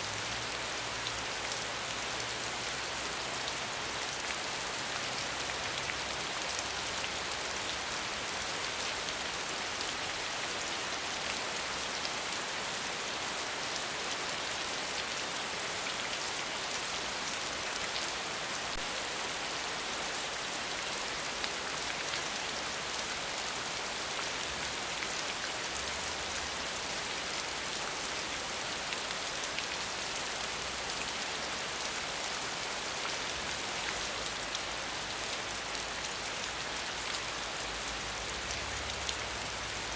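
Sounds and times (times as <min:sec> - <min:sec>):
rain on a hard surface: 0:00.0 - 0:39.9.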